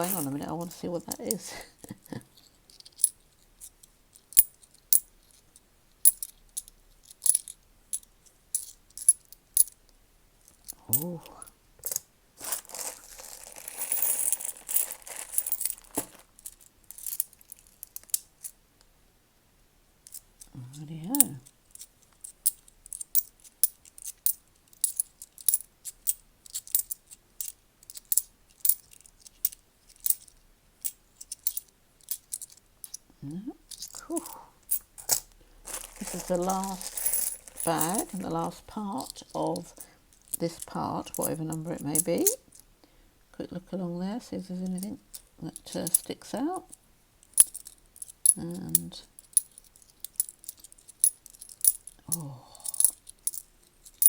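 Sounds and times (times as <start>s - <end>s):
coins clinking: 0.0s - 1.6s, 11.8s - 18.5s, 21.1s - 33.0s, 33.7s - 42.4s, 47.3s - 54.0s.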